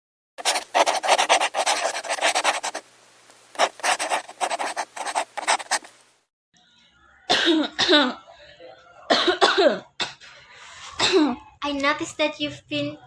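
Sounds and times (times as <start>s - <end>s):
person coughing: 9.1s - 10.2s, 11.0s - 11.4s.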